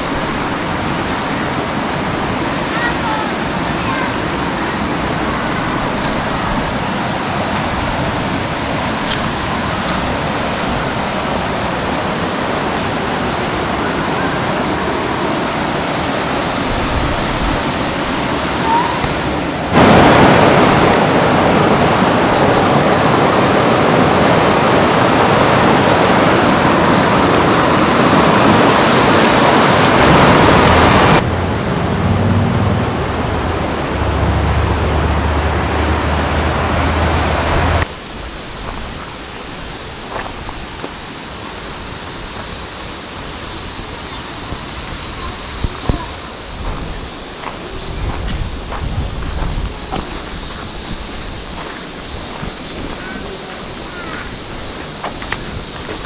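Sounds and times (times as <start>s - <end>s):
rushing water: 0.0s - 56.0s
low drone: 18.0s - 37.9s.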